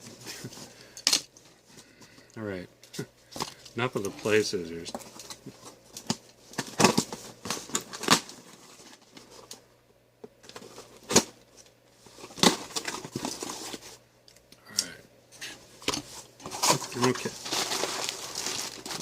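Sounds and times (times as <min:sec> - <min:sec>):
packaging crinkling and tearing: 0:16.4 - 0:19.0.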